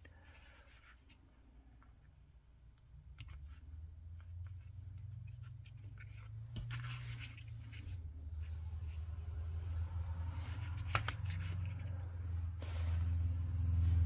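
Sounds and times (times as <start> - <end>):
steady low hum: 0.0 - 14.0
paper rustling: 3.2 - 9.2, 10.3 - 13.2.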